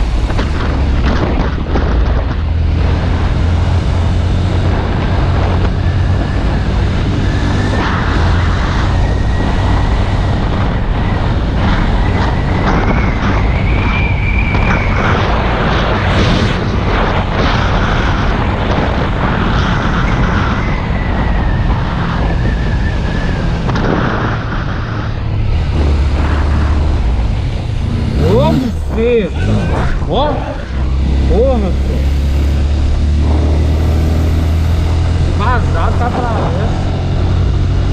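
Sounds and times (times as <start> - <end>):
motorcycle engine drone: 0.0 - 37.9
wind buffeting microphone: 0.0 - 37.9.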